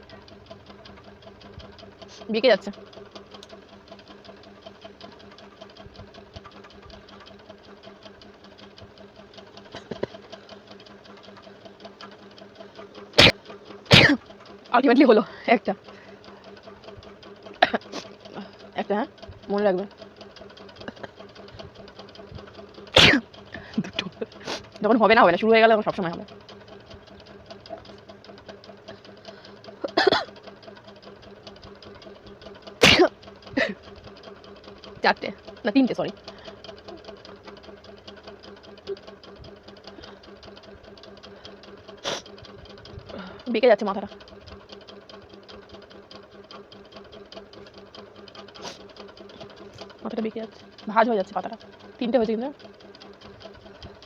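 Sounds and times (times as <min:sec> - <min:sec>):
small machine ticking and humming: 0:00.0 - 0:54.0
woman sneezing: 0:13.9 - 0:14.2, 0:23.0 - 0:23.2, 0:32.8 - 0:33.1.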